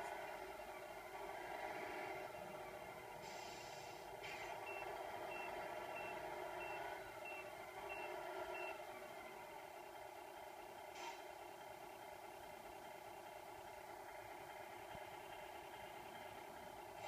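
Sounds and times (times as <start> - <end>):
diesel engine sound through speaker: 0.0 - 17.0
hiss: 3.2 - 4.0.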